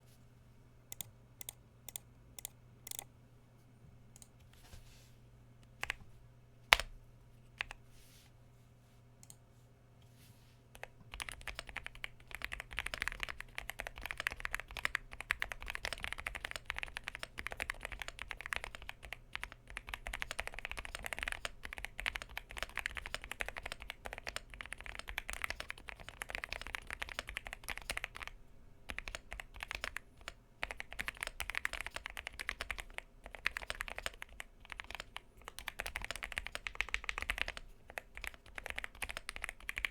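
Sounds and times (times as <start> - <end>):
mechanical keyboard typing: 0.9 - 3.0, 10.8 - 39.9.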